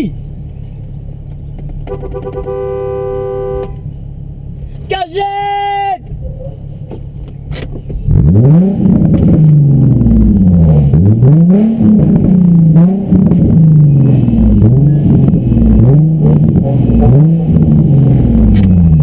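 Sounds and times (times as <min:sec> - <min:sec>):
car engine revving: 0:06.1 - 0:19.0.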